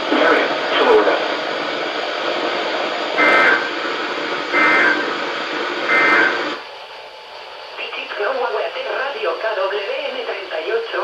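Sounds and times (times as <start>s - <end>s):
radio static hiss: 0.0s - 11.0s
shrill data bursts: 3.0s - 6.6s.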